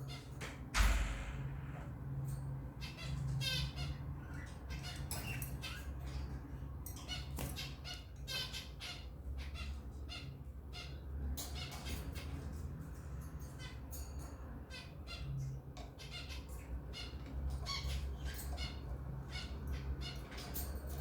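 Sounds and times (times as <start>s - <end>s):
lovebirds chirping and squawking: 0.0s - 21.0s.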